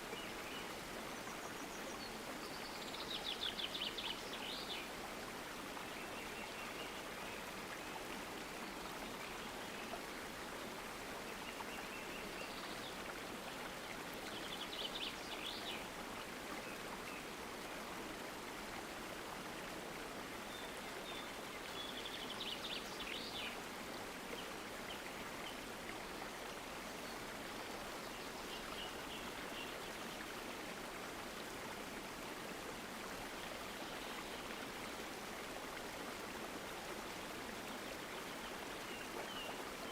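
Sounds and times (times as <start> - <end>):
stream flowing: 0.0 - 39.9.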